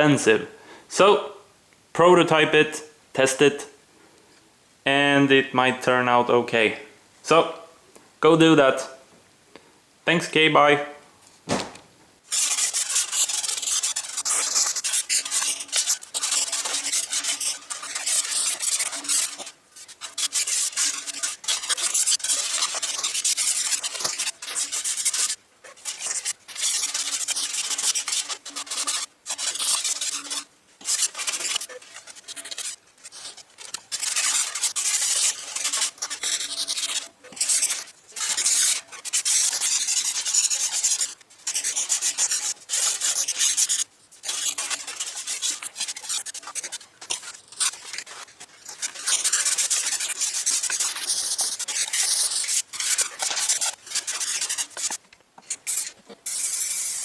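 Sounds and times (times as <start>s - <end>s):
abrasive sanding on a rim: 12.3s - 55.0s.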